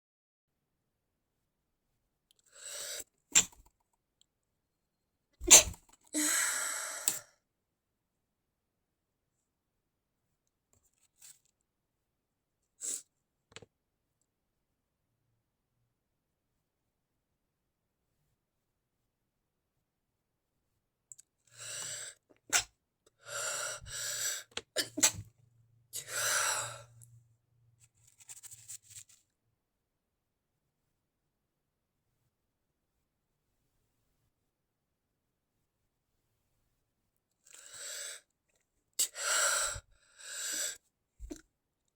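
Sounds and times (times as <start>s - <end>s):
breathing in and out: 2.5s - 3.6s, 5.4s - 7.3s, 21.5s - 25.1s, 26.0s - 27.1s, 37.5s - 38.3s, 39.0s - 41.4s
stifled sneezes: 5.4s - 7.2s, 24.8s - 25.3s.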